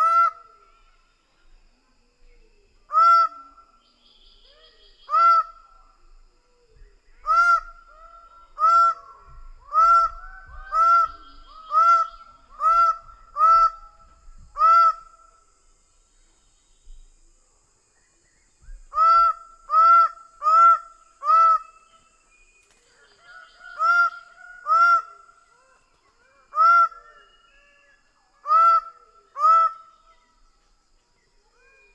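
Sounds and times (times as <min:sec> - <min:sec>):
higher bird calls: 0:07.1 - 0:15.6.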